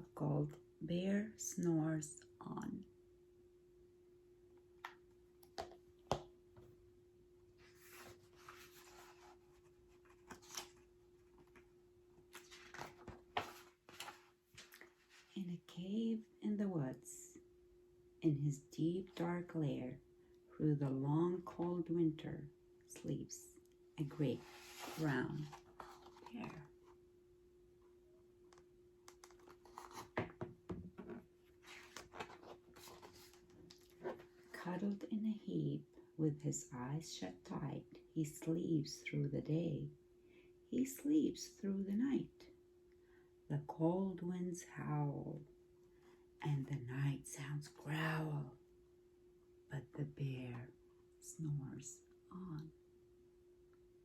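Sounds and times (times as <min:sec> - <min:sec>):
faint steady hum: 0:00.0 - 0:54.0
book pages rustling: 0:07.6 - 0:15.4, 0:24.1 - 0:27.0, 0:28.5 - 0:34.6.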